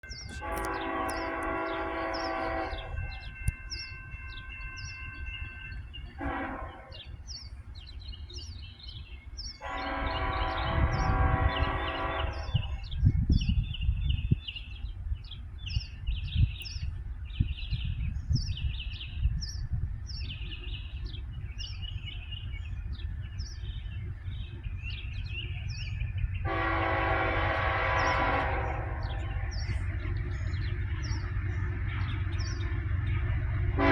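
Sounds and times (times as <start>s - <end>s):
train knocks and clanks: 0.0s - 8.7s, 20.3s - 33.9s
train rumbling past: 0.0s - 33.9s
locomotive air horn: 0.2s - 7.2s, 9.6s - 13.0s, 26.4s - 30.0s, 33.3s - 33.9s.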